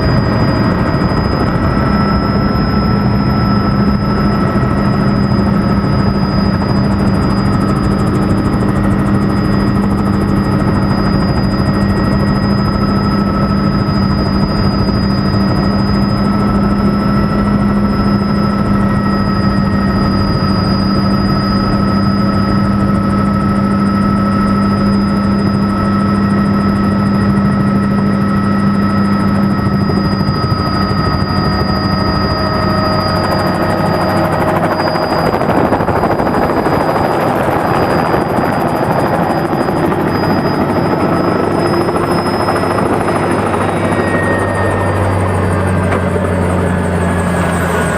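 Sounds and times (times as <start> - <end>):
helicopter rotor and engine drone: 0.0 - 47.9
high whines: 24.6 - 47.9.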